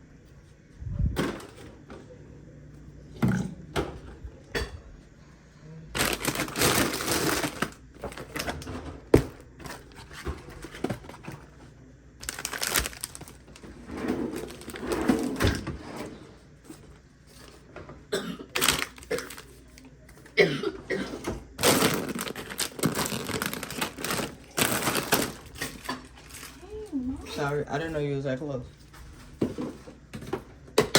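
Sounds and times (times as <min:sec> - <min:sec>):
items set down knocking: 0:01.2 - 0:02.0
rustling of bags and packaging: 0:05.9 - 0:17.7, 0:18.4 - 0:20.4, 0:21.1 - 0:30.3.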